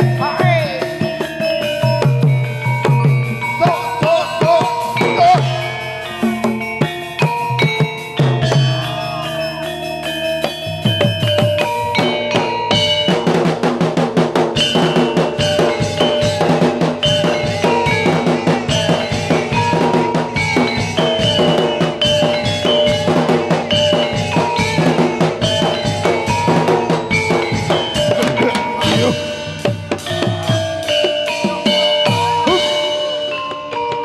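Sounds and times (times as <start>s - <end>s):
ringing pitched metal notes: 0.0s - 34.0s
fast dense drumming: 10.3s - 32.8s.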